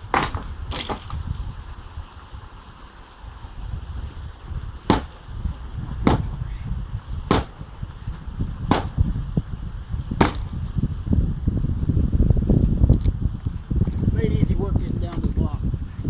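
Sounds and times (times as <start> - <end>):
hammer striking concrete block wall: 0.1 - 1.0, 4.9 - 5.2, 6.0 - 6.3, 7.3 - 7.6, 8.7 - 9.0, 10.2 - 10.5.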